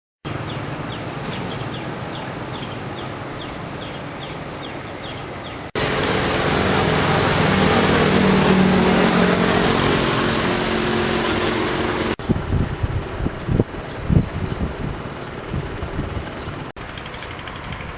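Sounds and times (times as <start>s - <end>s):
vehicle rushing noise and hum: 5.7s - 17.0s.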